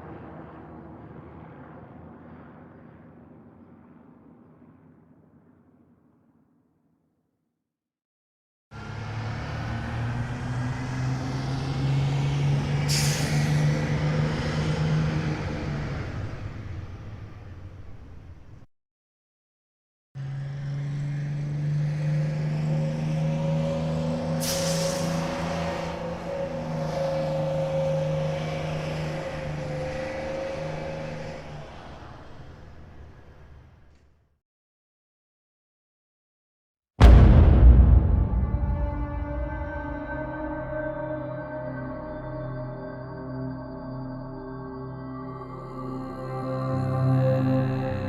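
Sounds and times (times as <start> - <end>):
sharp hiss of released air: 24.4 - 25.2.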